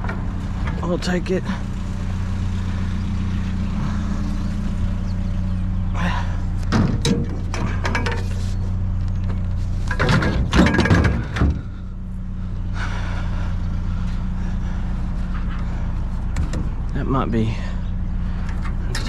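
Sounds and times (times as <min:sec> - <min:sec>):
vehicle engine idling: 0:00.0 - 0:19.0
metal objects clattering: 0:06.7 - 0:08.5, 0:09.8 - 0:11.6.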